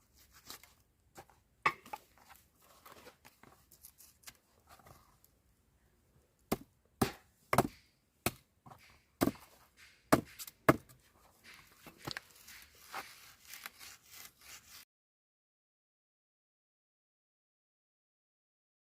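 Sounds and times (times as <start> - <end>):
sharp chopping knocks: 6.5 - 10.9.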